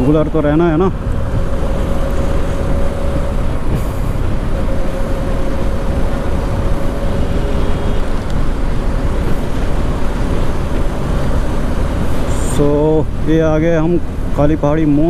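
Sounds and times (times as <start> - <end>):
motorcycle engine cruising: 0.0 - 13.4
road noise: 0.0 - 15.0
wind rush on microphone: 0.0 - 15.0.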